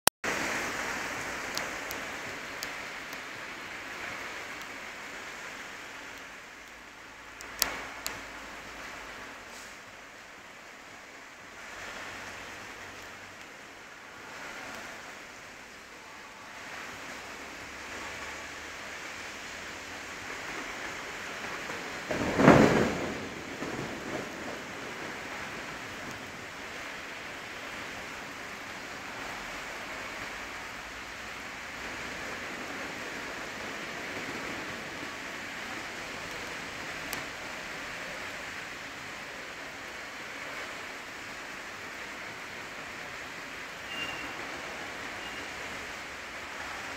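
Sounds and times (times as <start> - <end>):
heavy rain pouring: 0.2 - 46.9
thunder crack: 21.4 - 26.3.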